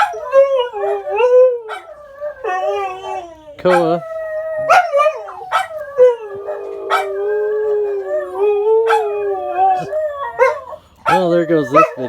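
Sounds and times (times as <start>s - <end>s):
dogs howling: 0.0s - 12.0s
dog barking sharply: 11.0s - 12.0s.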